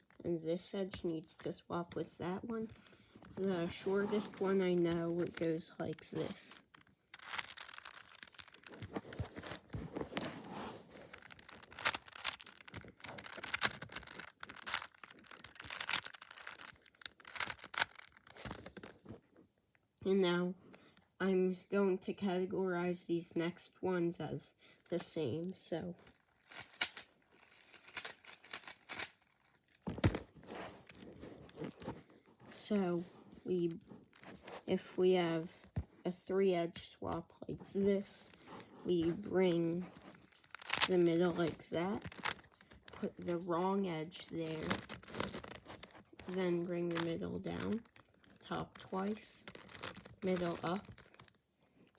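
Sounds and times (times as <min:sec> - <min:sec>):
puzzle cube clicking and scraping: 0:01.0 - 0:19.2, 0:26.0 - 0:34.8, 0:37.7 - 0:51.3.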